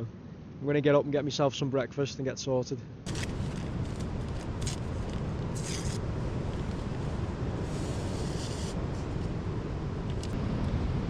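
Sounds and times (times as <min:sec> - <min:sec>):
storm wind through treetops: 0:03.0 - 0:11.0.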